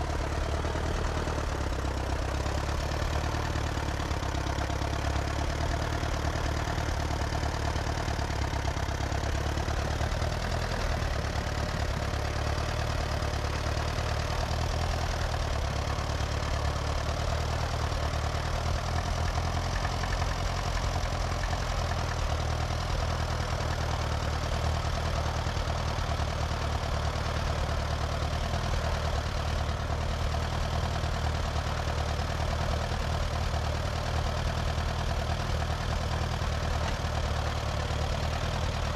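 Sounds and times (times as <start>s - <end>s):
sawmill engine humming: 0.0s - 16.6s.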